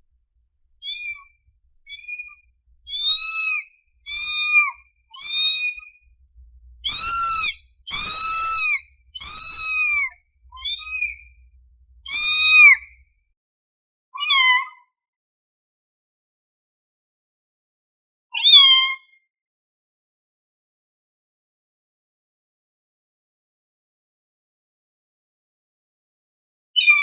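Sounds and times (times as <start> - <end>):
kitten meowing: 0.8 - 1.2, 1.9 - 5.9, 6.8 - 11.3, 12.0 - 12.9.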